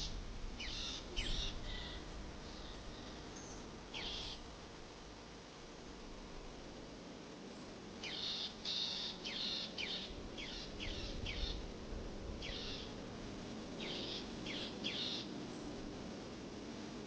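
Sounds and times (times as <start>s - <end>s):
bird chirping: 3.4s - 4.4s, 8.0s - 11.6s, 12.4s - 12.9s, 13.8s - 15.2s.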